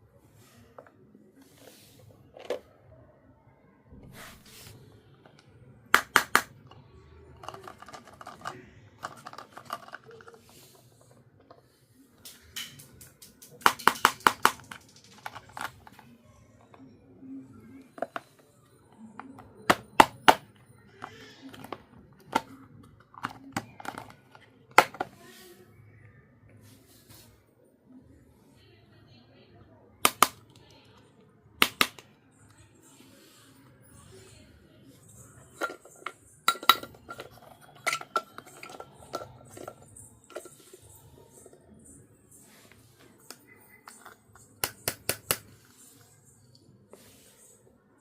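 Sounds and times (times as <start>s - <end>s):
toy pieces clicking and tapping: 6.0s - 16.0s, 19.1s - 25.1s, 30.0s - 30.6s, 31.6s - 32.1s, 35.3s - 42.0s, 43.2s - 46.5s
toy pieces clinking: 35.1s - 42.0s.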